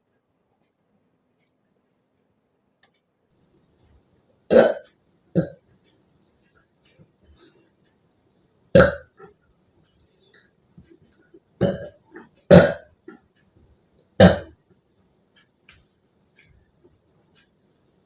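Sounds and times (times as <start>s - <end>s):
person burping: 4.5s - 5.6s, 8.8s - 9.3s, 11.6s - 13.2s, 14.2s - 14.6s.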